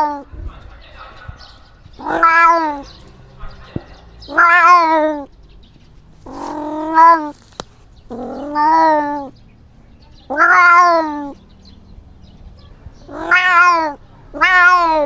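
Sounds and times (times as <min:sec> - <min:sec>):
cat meowing: 0:00.0 - 0:00.3, 0:02.0 - 0:03.0, 0:04.3 - 0:05.3, 0:06.2 - 0:07.4, 0:08.1 - 0:09.4, 0:10.3 - 0:11.4, 0:13.0 - 0:15.0.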